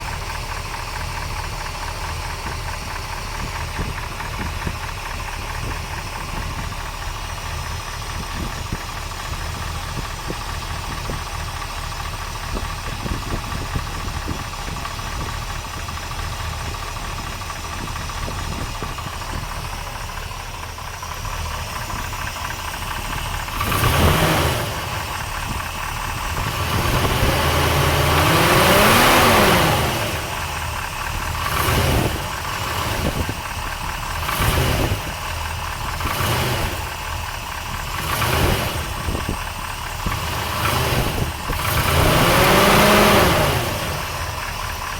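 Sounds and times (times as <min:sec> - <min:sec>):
engine idling with ticking knock: 0:00.0 - 0:44.9
engine revving: 0:00.0 - 0:44.9.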